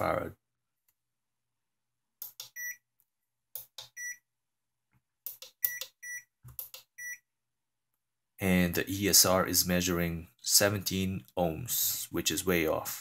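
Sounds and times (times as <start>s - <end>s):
sharp clicks: 5.2s - 6.9s.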